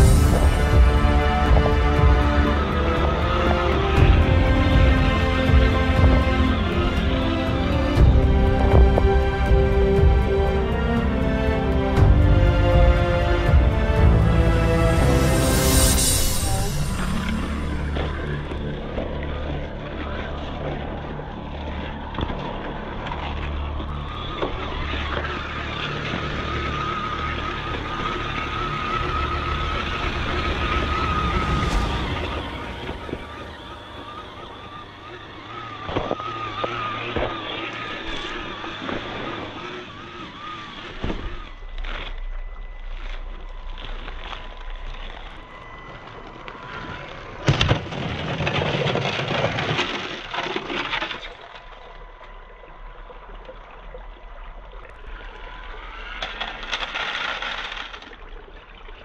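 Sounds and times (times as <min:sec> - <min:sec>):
electric motor whining: 0:00.0 - 0:47.8
sharp cracks and knocks: 0:35.8 - 0:39.1, 0:47.4 - 0:51.6.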